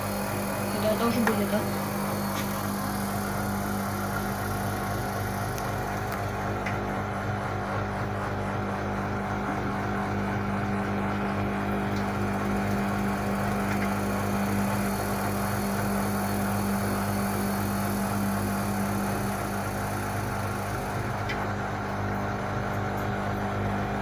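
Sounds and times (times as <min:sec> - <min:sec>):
washing machine running: 0:00.0 - 0:24.0.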